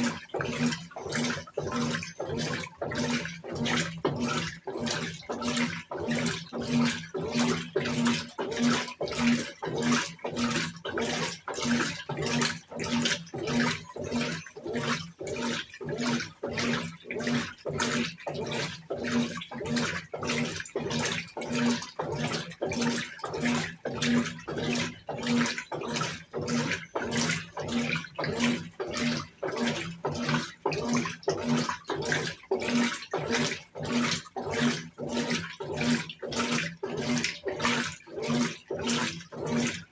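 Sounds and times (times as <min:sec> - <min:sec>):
washing machine water sloshing: 0:00.0 - 0:39.9.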